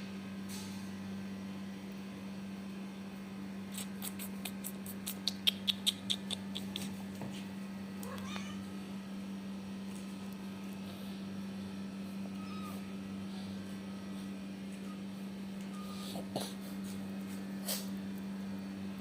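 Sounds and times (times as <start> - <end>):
cat chattering chirps: 4.0 - 6.9.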